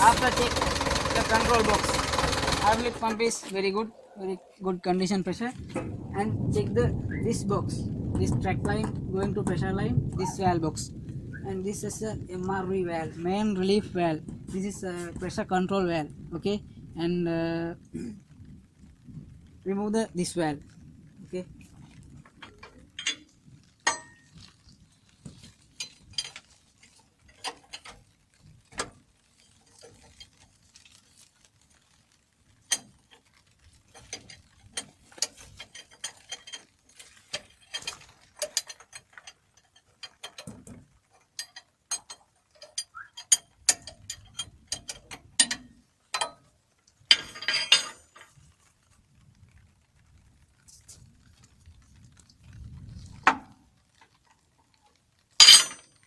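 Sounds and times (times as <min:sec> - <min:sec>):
metal tool clicks and knocks: 0:41.4 - 0:46.4, 0:47.1 - 0:48.1, 0:55.4 - 0:55.8.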